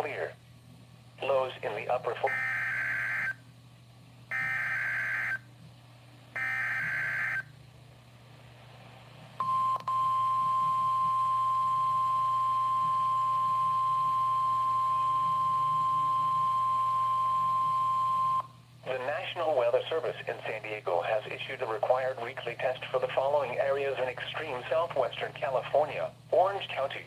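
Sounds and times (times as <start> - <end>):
steady warning alarm tone: 2.3 - 3.4, 4.3 - 5.5, 6.4 - 7.5, 9.4 - 18.5.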